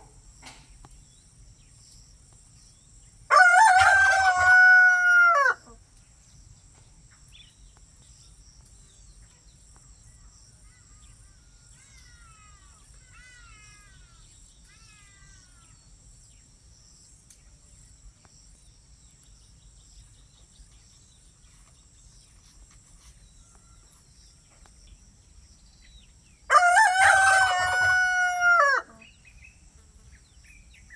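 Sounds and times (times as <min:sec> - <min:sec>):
high insect trill: 0:00.0 - 0:30.9
rooster crowing: 0:03.3 - 0:05.8, 0:26.5 - 0:29.1.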